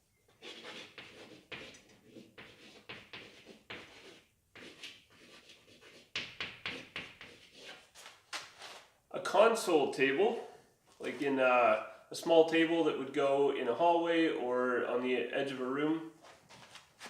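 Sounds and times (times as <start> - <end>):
chalk scratching on chalkboard: 0.3 - 8.9.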